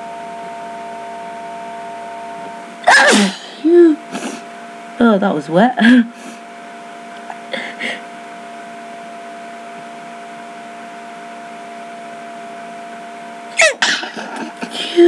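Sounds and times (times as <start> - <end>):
room hum with high whine: 0.0 - 15.0
person short sharp vocal sound: 2.9 - 3.8.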